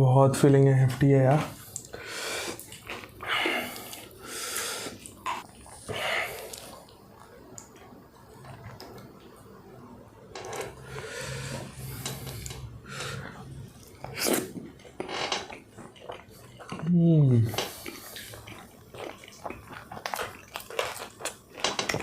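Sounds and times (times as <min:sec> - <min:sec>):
chewing food: 0:01.6 - 0:04.2, 0:13.2 - 0:22.0.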